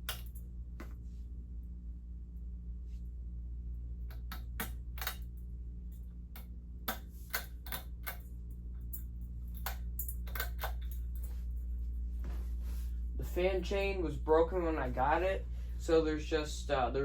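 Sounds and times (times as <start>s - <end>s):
fan pull chain clicking: 0.0s - 0.4s, 4.1s - 5.4s, 6.3s - 11.3s
steady low hum: 0.0s - 17.0s.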